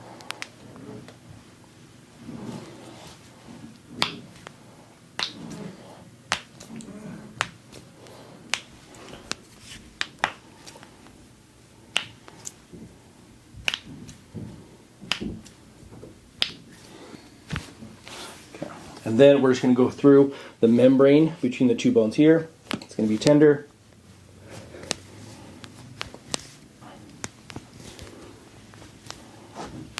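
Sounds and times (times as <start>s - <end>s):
soft handling sounds: 12.2s - 29.9s.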